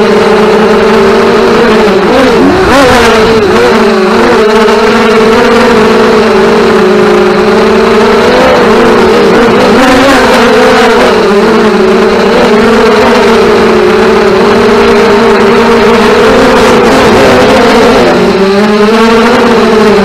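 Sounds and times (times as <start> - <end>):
quadcopter motors whining: 0.0 - 20.0.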